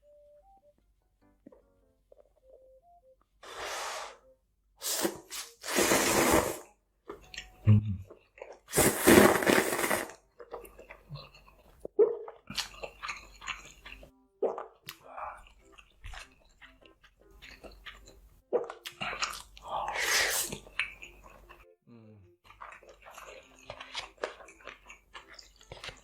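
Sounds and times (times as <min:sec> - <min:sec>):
chewing crackles: 0:10.1 - 0:21.7, 0:22.4 - 0:26.0
crunching and biting: 0:22.5 - 0:26.0.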